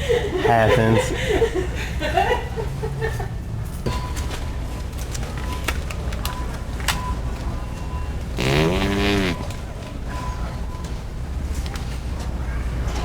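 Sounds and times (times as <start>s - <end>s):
prank fart noise: 8.3s - 9.7s.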